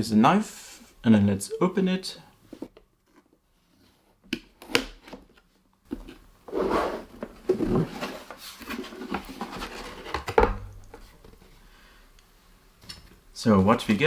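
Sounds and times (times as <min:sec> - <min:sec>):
cardboard rustling and scraping: 0:05.9 - 0:11.5.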